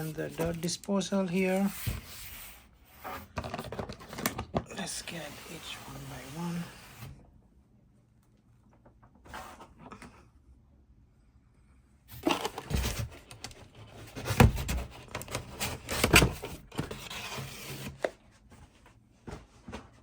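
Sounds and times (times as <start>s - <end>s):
packaging rustling and scraping: 0.0s - 7.1s, 12.1s - 18.4s.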